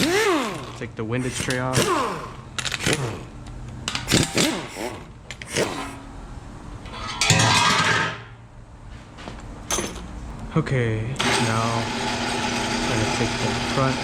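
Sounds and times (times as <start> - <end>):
loud steady buzz: 0.0 - 8.1, 10.6 - 14.0
short squeaking glides: 4.1 - 6.2.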